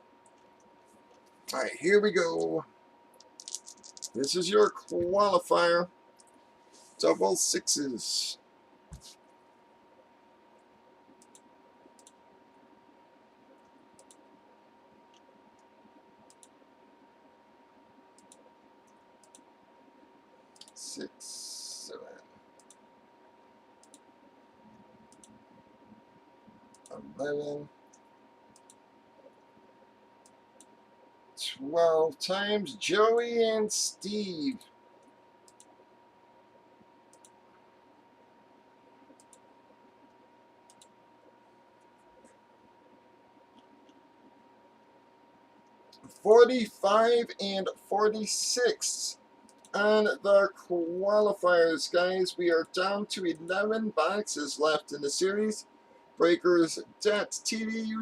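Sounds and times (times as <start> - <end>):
faint electrical whine: 0.0 - 58.0
faint steady hum: 0.0 - 58.0
computer mouse clicks: 10.6 - 12.2, 13.5 - 14.3, 15.1 - 16.6, 18.1 - 19.5, 20.5 - 20.8, 22.6 - 22.8, 23.8 - 24.1, 24.7 - 25.4, 26.5 - 26.9, 27.9 - 29.5, 35.0 - 35.8, 37.1 - 37.6, 39.1 - 41.0, 49.4 - 49.7.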